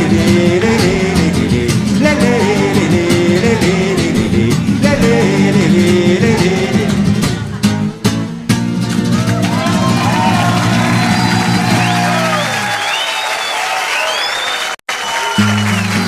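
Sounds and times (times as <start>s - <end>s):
person singing: 0.0s - 7.6s
acoustic guitar strumming: 0.0s - 12.4s, 15.4s - 16.0s.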